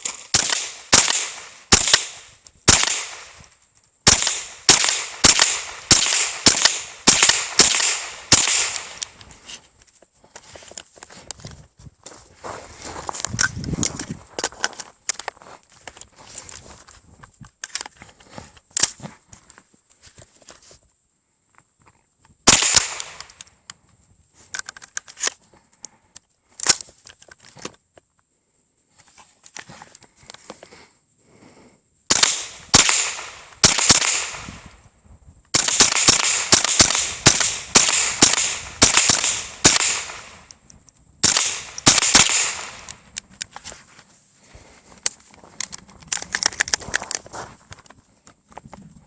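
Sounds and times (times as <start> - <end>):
rifle gunshots: 0.0 - 3.4, 4.0 - 9.0, 22.5 - 23.2, 32.1 - 34.6, 35.6 - 40.5, 41.2 - 42.9.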